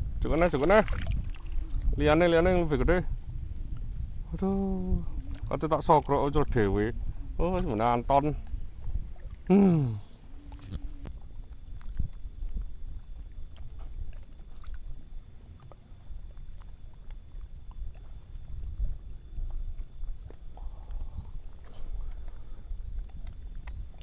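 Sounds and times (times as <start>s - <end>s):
wind on microphone: 0.0s - 24.0s
water sloshing: 0.3s - 1.9s, 7.4s - 24.0s
person exclaiming: 9.5s - 10.0s.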